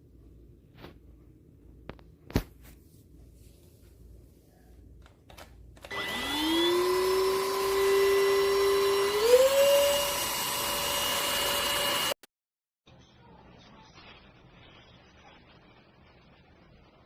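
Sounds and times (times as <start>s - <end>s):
vacuum cleaner motor whining: 5.8s - 12.2s.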